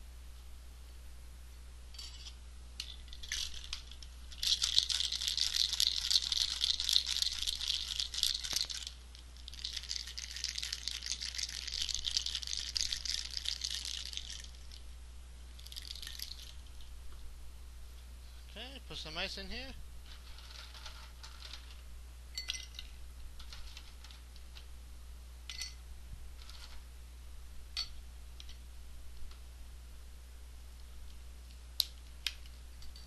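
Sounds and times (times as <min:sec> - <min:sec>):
ice clinking: 0:02.8 - 0:08.9, 0:09.5 - 0:14.8, 0:15.6 - 0:16.6
ice rattling in cocktail shaker: 0:02.8 - 0:14.8, 0:15.6 - 0:16.6.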